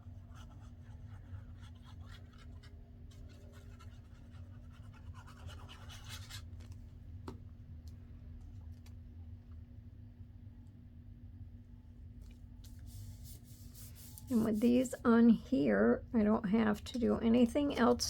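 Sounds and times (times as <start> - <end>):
steady low hum: 0.0 - 18.0
paper rustling and scratching: 0.3 - 6.8.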